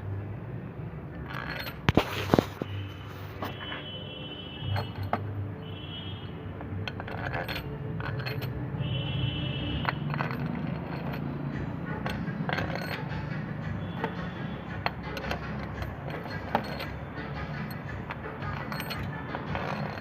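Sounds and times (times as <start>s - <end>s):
metal bolts clinking and scraping: 1.1s - 3.9s, 4.6s - 5.4s, 6.6s - 9.0s, 9.7s - 20.0s
ringing metal clinks: 12.0s - 14.3s, 15.2s - 20.0s.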